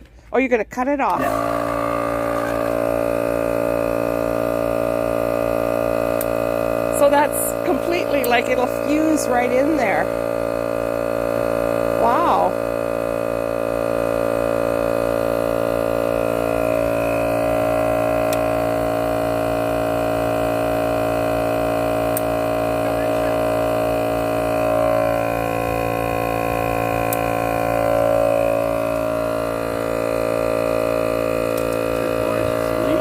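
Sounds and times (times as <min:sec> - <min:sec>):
air compressor droning hum: 0:01.0 - 0:33.0.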